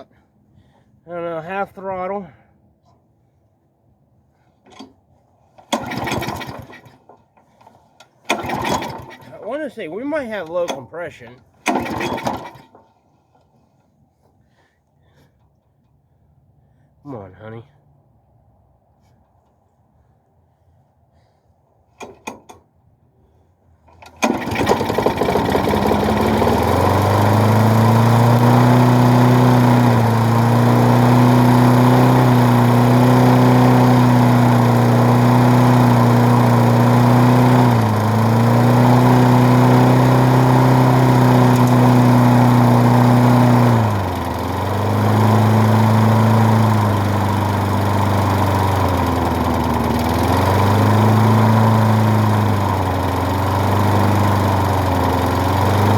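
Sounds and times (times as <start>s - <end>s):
small lawnmower engine running: 5.6s - 13.0s, 23.9s - 55.9s.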